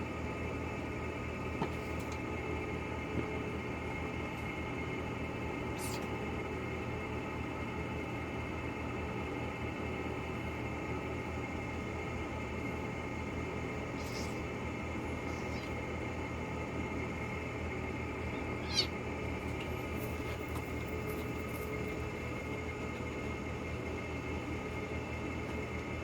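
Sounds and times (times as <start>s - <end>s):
steady background hum: 0.0s - 26.0s
kitten mewing: 5.8s - 6.1s, 13.8s - 15.8s, 18.2s - 19.1s.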